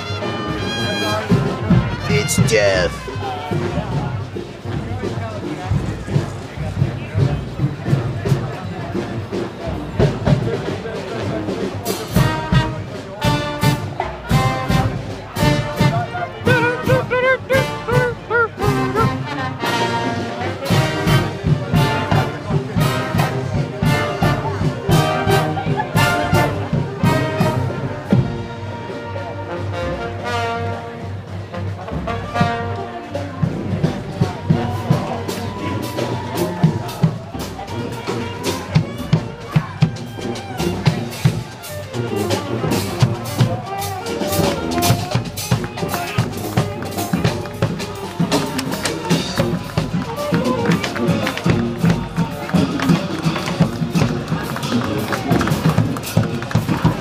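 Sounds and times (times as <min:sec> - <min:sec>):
brass band playing: 0:00.0 - 0:04.0, 0:10.0 - 0:57.0
bass drum beats: 0:01.4 - 0:08.6, 0:14.3 - 0:19.5.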